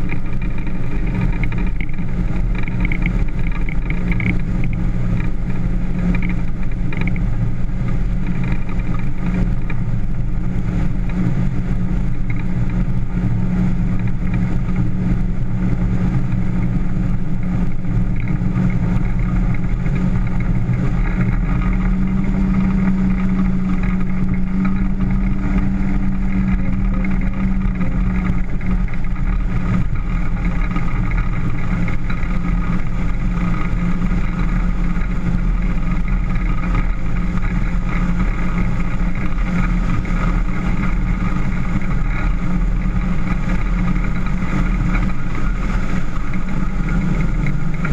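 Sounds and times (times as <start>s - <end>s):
motorboat engine droning: 0.0s - 47.9s
rushing water noise: 0.0s - 47.9s.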